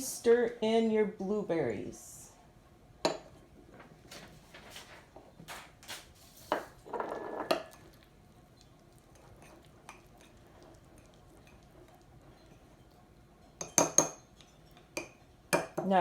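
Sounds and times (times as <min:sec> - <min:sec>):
spoon scraping mug: 0:06.4 - 0:07.7
spoon clinking against mug: 0:13.6 - 0:15.8.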